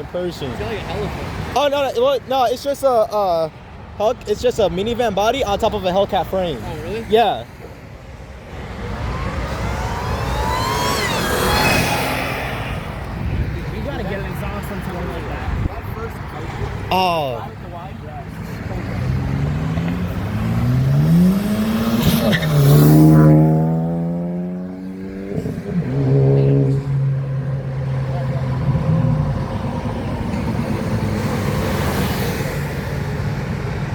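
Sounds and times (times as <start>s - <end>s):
car accelerating past: 8.5s - 14.4s, 18.2s - 33.9s.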